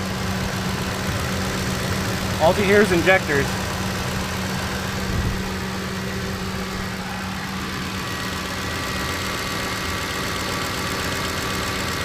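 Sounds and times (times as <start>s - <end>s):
engine idling: 0.0s - 12.0s
fuel injectors ticking: 0.0s - 12.0s.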